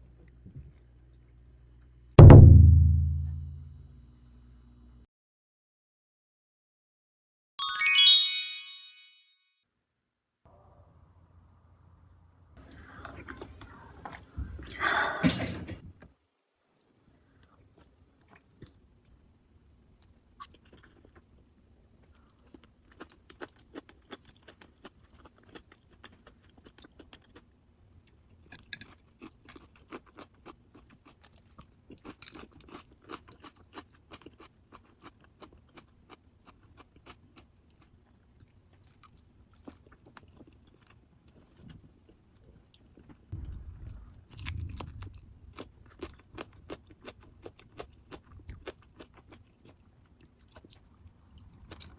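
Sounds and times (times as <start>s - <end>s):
low rumble: 2.3s - 3.8s, 43.4s - 45.9s
chewing and crunching food: 12.6s - 14.8s, 17.3s - 51.9s.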